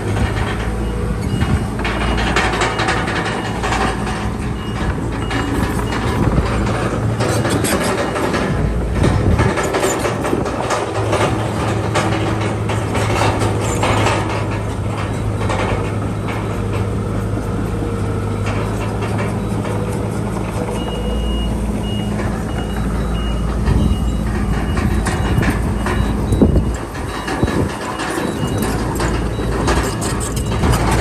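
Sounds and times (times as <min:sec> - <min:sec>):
heavy diesel machinery running: 0:00.0 - 0:31.0
reversing alarm beeping: 0:00.2 - 0:10.4, 0:17.7 - 0:31.0
metal clanking: 0:22.2 - 0:31.0.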